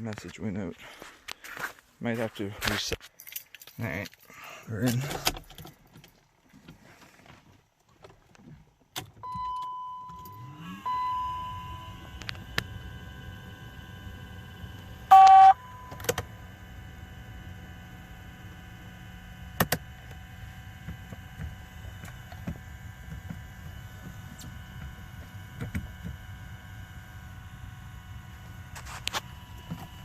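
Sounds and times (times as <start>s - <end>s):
short electronic beep: 9.2s - 12.1s, 15.1s - 16.0s
car dashboard chime: 9.2s - 16.4s.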